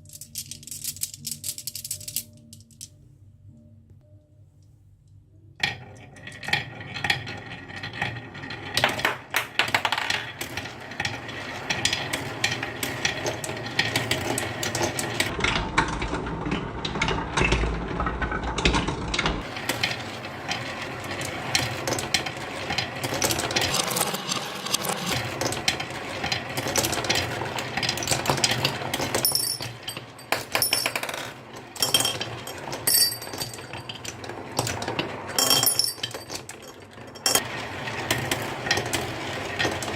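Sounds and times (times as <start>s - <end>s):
marbles clattering down wooden run: 6.2s - 15.3s, 19.4s - 39.9s.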